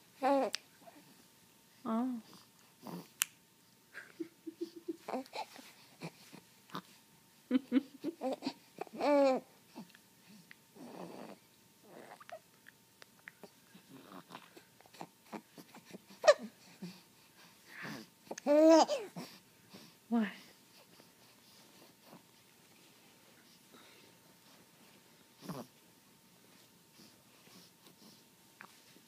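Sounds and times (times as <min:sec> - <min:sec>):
baby babbling and cooing: 0:00.2 - 0:01.1, 0:05.0 - 0:06.2, 0:08.1 - 0:09.9, 0:10.8 - 0:12.4, 0:13.4 - 0:17.0, 0:18.3 - 0:19.4.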